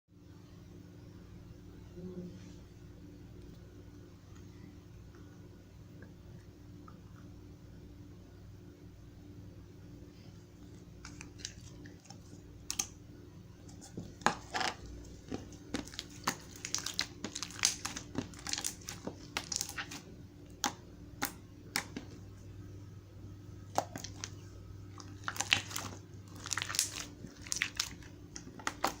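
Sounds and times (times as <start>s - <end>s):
faint steady hum: 0.1s - 29.0s
crisp clicks and crackles: 10.7s - 13.0s, 13.7s - 22.2s, 23.7s - 29.0s.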